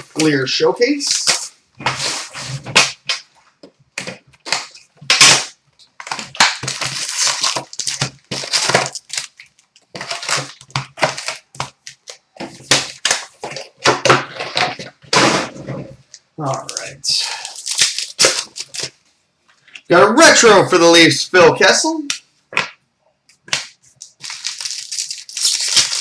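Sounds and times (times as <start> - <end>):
cardboard tearing: 1.0 - 3.2, 4.0 - 15.8, 16.5 - 18.9, 23.5 - 26.0
foil wrappers crinkling: 4.0 - 15.0, 16.4 - 19.0, 23.4 - 26.0.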